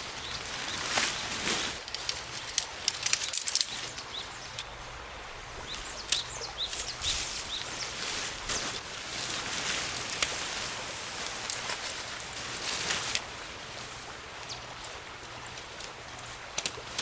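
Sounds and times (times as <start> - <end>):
creek rushing: 0.0 - 17.0
sharp clicks or rustles: 0.9 - 4.7
small birds chirping: 3.3 - 8.8.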